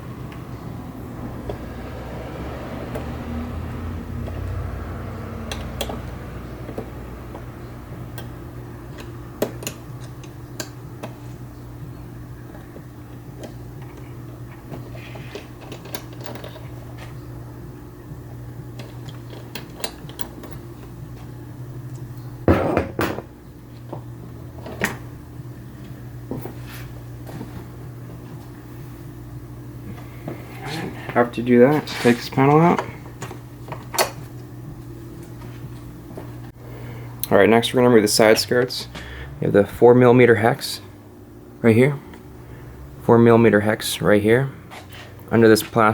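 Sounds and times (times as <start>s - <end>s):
steady low hum: 0.0s - 45.9s
hand tools clicking and knocking: 5.4s - 7.5s.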